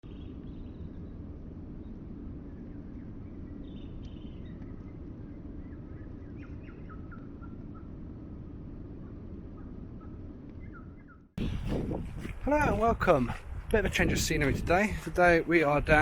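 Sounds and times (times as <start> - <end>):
small birds chirping: 0.0 - 8.0, 9.6 - 12.4
low outdoor rumble: 0.0 - 16.0.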